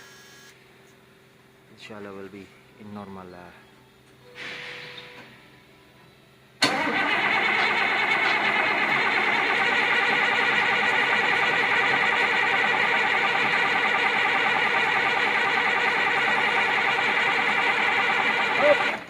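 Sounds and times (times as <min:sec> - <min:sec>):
diesel engine turning over: 0:06.6 - 0:19.0.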